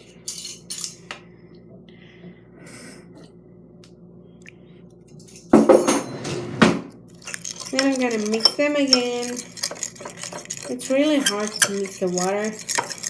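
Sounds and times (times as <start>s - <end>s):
metal spoon scraping container: 7.2s - 13.0s.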